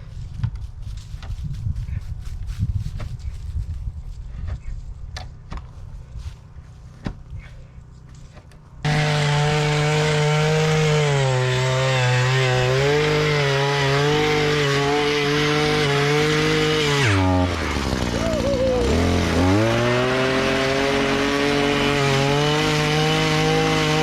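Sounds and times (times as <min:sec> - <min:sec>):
chainsaw cutting at high revs: 0:08.8 - 0:24.0.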